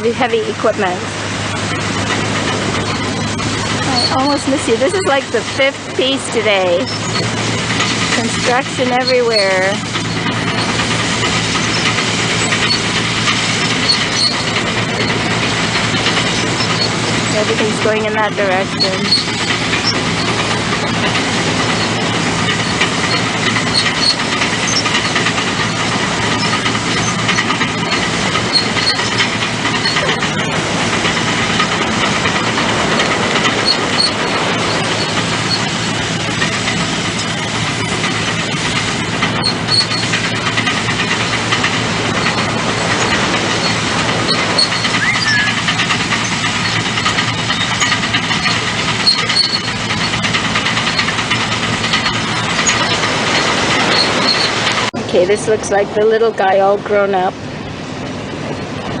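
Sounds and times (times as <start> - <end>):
heavy machinery engine running: 0.0 - 59.0.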